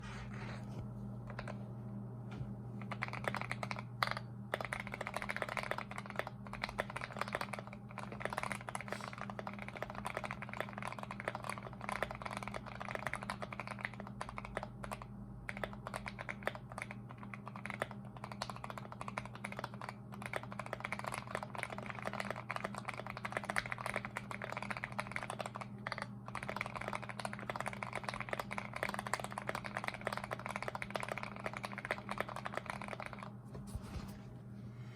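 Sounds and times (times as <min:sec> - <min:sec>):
mechanical keyboard typing: 0:02.9 - 0:33.3
low hum: 0:33.2 - 0:34.9.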